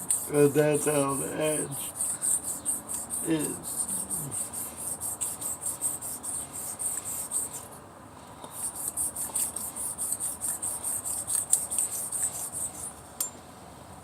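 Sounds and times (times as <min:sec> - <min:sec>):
blade scraping on whetstone: 0:00.0 - 0:07.7, 0:08.5 - 0:12.9.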